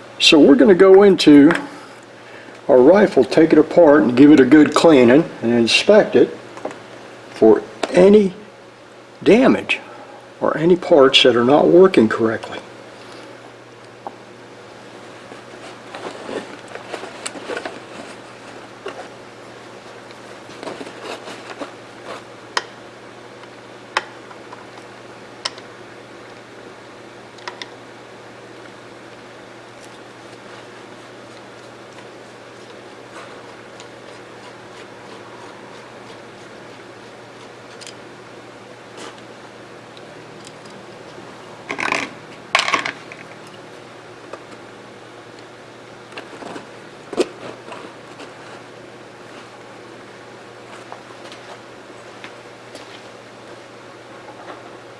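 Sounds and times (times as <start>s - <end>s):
steady low hum: 0.0s - 54.9s
rifle parts scraping rattles: 41.7s - 43.3s.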